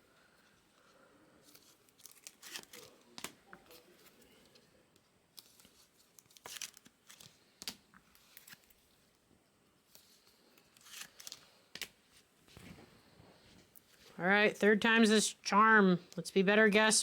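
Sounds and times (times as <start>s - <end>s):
foil wrappers crinkling and tearing: 1.4s - 4.1s, 5.3s - 8.8s, 10.4s - 11.9s
cards crackling: 1.4s - 4.4s, 5.3s - 9.0s, 9.9s - 12.6s.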